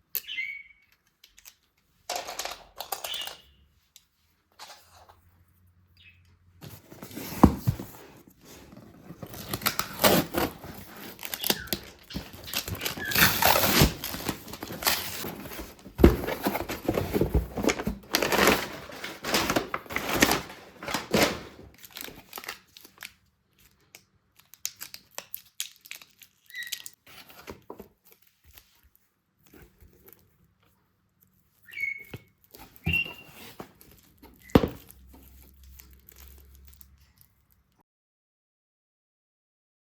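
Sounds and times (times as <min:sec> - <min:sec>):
packaging crinkling: 0:06.7 - 0:27.4, 0:32.4 - 0:37.7.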